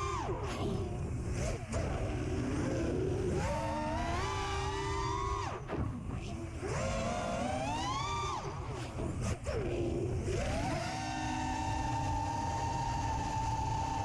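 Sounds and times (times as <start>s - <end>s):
quadcopter motors whining: 0.0s - 14.0s.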